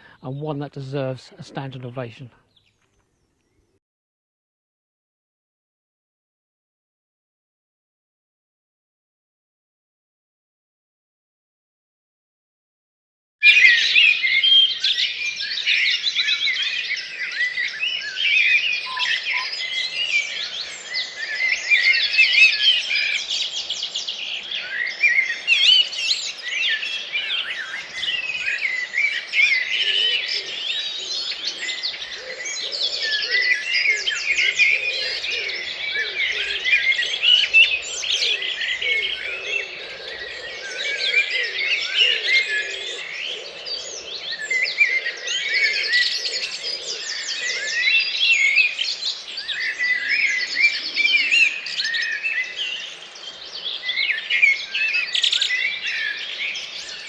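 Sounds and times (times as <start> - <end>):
birds singing: 0.0 - 3.8, 13.5 - 57.0
low bird warbling: 29.6 - 47.9.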